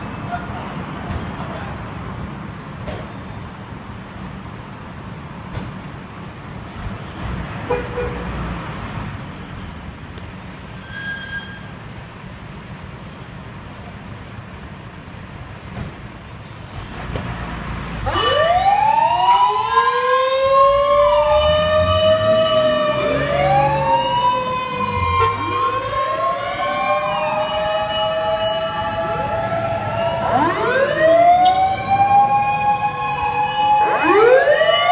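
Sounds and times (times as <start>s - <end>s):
road traffic rumble: 0.0s - 34.9s
fire engine sirens wailing: 18.0s - 34.9s.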